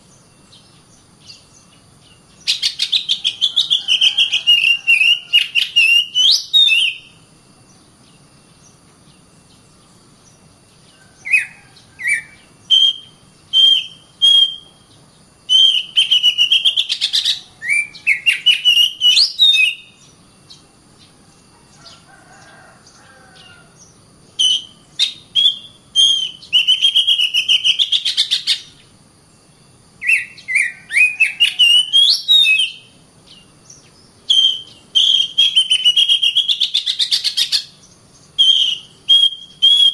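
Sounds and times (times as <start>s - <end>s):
songbird singing whistled phrases: 0.1s - 7.2s, 11.2s - 20.2s, 24.3s - 28.8s, 30.0s - 39.9s.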